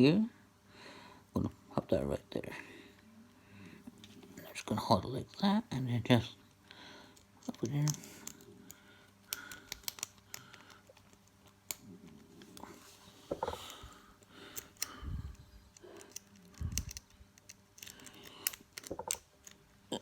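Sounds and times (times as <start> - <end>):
lock pick clicking and scraping: 7.2 - 11.8, 14.5 - 19.6.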